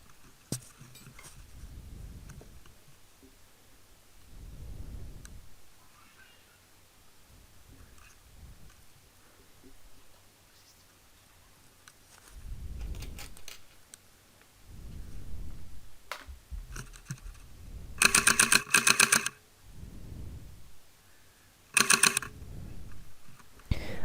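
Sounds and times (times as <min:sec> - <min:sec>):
muffled rustling of movement: 0:00.0 - 0:18.2, 0:22.2 - 0:24.0
airsoft gun firing bursts: 0:18.0 - 0:19.4, 0:21.8 - 0:22.3.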